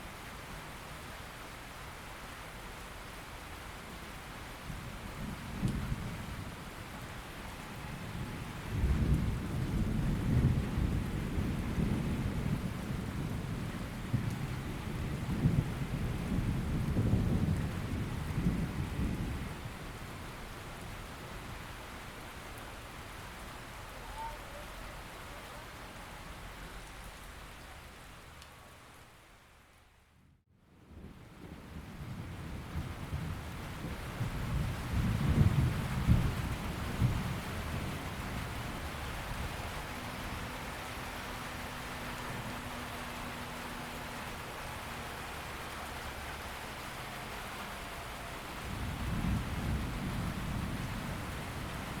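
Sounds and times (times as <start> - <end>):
rain falling: 0.0 - 30.1, 30.7 - 52.0
rolling thunder rumble: 7.7 - 21.2, 30.9 - 52.0.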